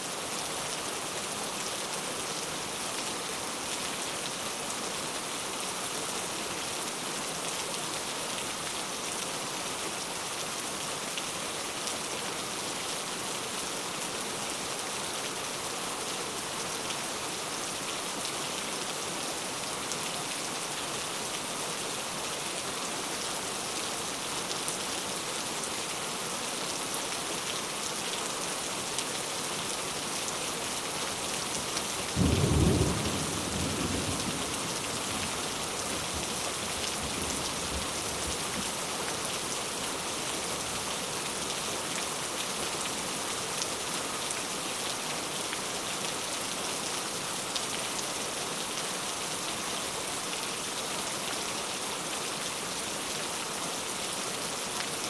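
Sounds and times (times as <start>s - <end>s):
heavy rain falling: 0.1s - 55.0s
low rumble of thunder: 32.2s - 35.3s.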